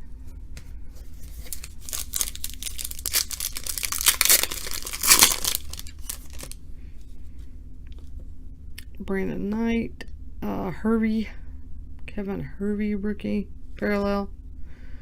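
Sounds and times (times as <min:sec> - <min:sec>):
wrapper tearing and crinkling: 0:01.2 - 0:06.6.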